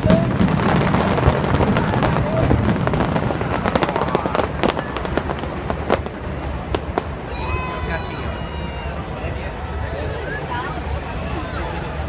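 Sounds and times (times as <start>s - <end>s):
low rumble of booms: 0.0s - 7.3s
fireworks cracking and banging: 0.0s - 9.2s
crowd voices: 0.0s - 12.0s.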